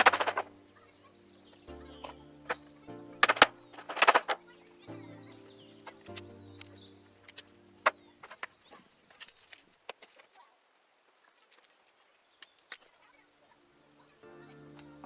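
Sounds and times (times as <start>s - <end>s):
background music with held notes: 0.0s - 8.4s, 13.3s - 15.0s.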